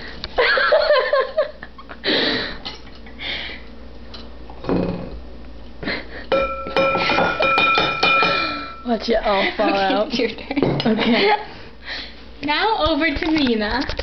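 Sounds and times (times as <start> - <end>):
girls giggling: 0.4 - 2.6, 9.2 - 11.7.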